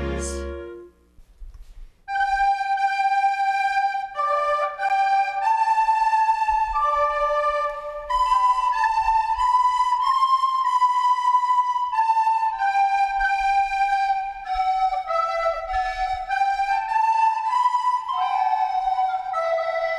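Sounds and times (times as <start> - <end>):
final chord of music: 0.0 - 0.9
flute melody: 0.0 - 1.1, 2.1 - 19.9.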